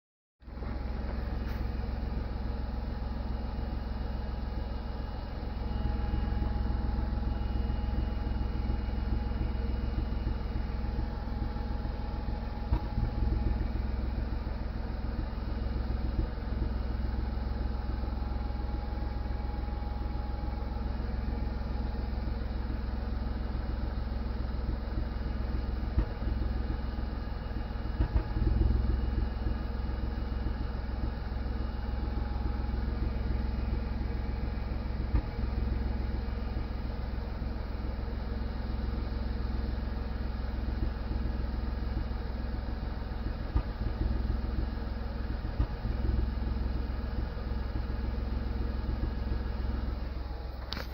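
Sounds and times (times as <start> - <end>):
car engine running steadily: 0.4 - 50.9
low knocks: 12.6 - 13.5.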